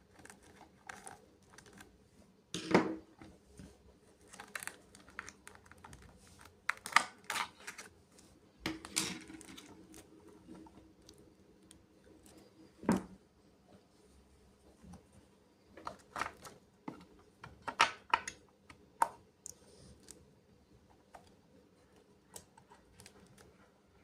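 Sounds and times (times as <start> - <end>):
hands handling toy packaging: 4.2 - 8.2.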